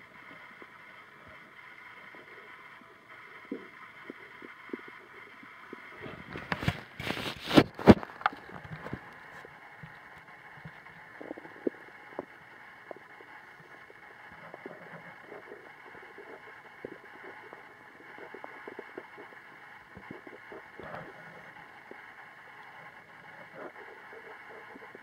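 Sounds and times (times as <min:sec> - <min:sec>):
steady hiss: 0:00.0 - 0:25.0
stomach gurgling: 0:00.0 - 0:25.0.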